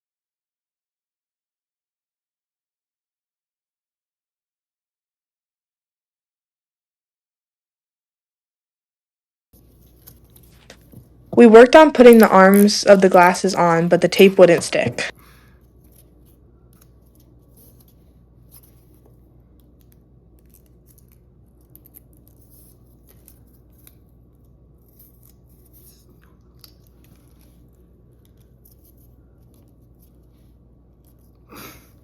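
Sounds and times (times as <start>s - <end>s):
low room hum: 9.6s - 32.0s.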